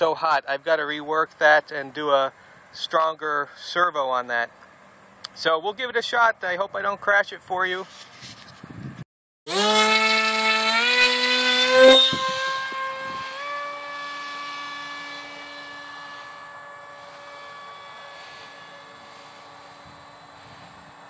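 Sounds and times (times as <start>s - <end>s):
model jet motor whining: 9.5s - 21.0s.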